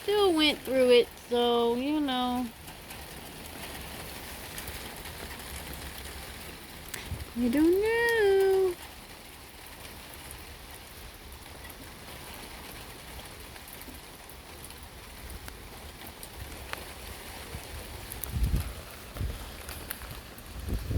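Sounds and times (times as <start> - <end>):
storm rain falling: 0.0 - 20.9
wind buffeting microphone: 17.4 - 20.9.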